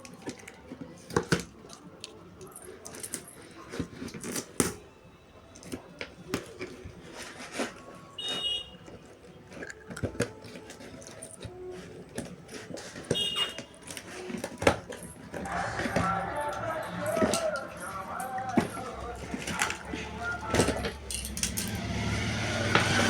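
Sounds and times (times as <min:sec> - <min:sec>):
packaging rustling and crinkling: 0:00.0 - 0:21.6.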